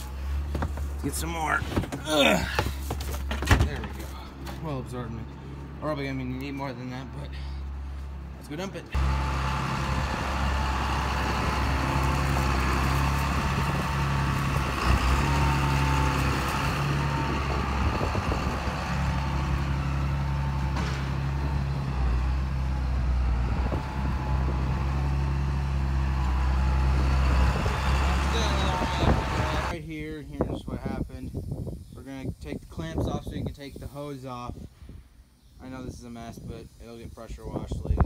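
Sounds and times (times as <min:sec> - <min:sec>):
farm vehicle engine running: 0:07.4 - 0:29.8.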